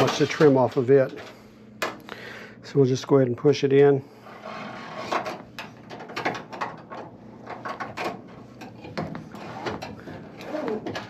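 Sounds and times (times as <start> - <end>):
wire scraping in cable casing: 7.5 - 11.0.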